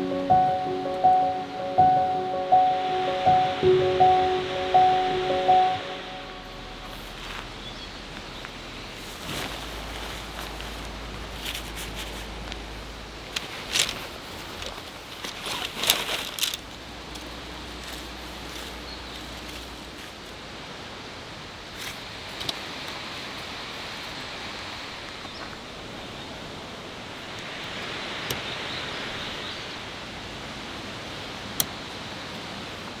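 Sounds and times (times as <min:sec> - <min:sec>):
tent fabric rustling: 0:09.0 - 0:16.7.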